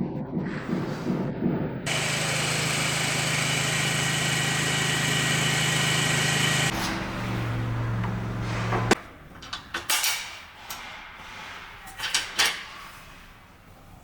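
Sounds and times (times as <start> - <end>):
leaf blower running: 1.9 - 8.4.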